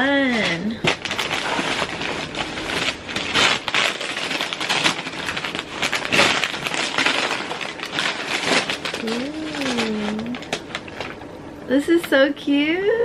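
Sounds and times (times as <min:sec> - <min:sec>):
packaging crinkling: 0:00.0 - 0:12.1.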